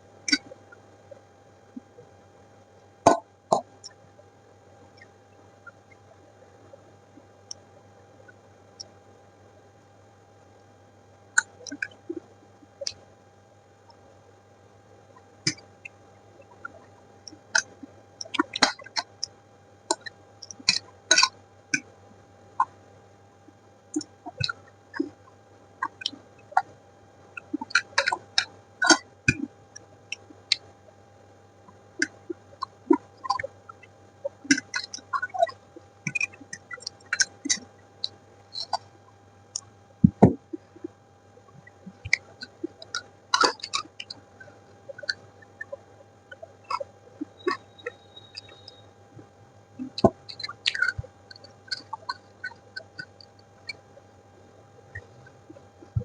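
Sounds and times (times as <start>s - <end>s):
chewing and mouth sounds: 49.8s - 53.8s.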